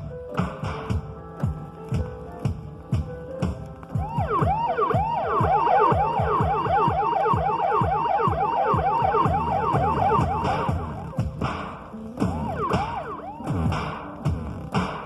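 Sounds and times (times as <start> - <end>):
synthesizer siren-like warble: 4.0 - 11.2, 12.3 - 13.7.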